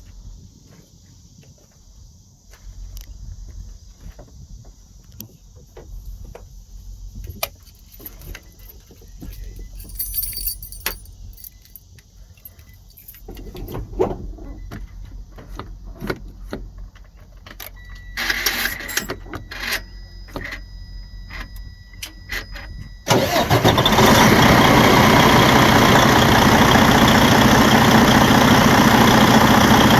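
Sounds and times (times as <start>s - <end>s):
diesel truck engine starting and running: 13.4s - 29.9s.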